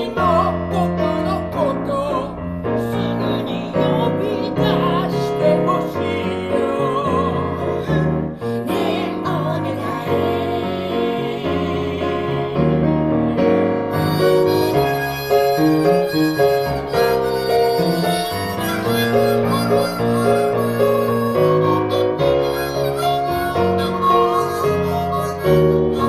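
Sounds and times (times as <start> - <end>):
piano: 0.0 - 26.0
reedy harmonica-like lead melody: 13.3 - 26.0.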